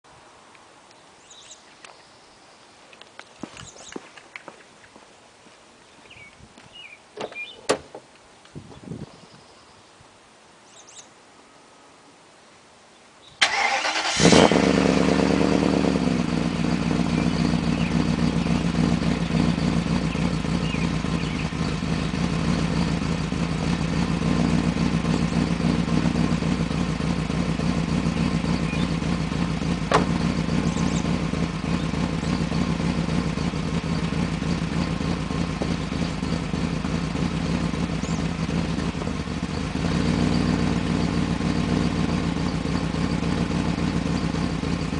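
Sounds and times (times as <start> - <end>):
engine starter cranking: 13.4 - 14.7
car engine rough idle: 13.4 - 44.9.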